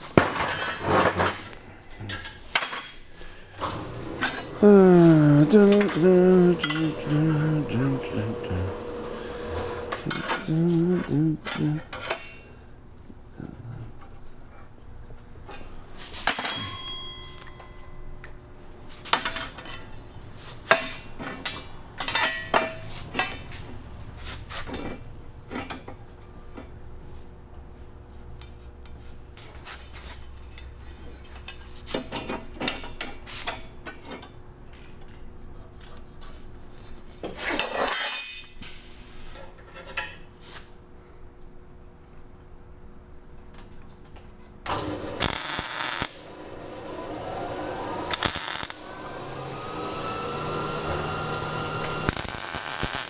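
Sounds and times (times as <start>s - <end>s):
struck metal ringing: 16.5s - 18.2s.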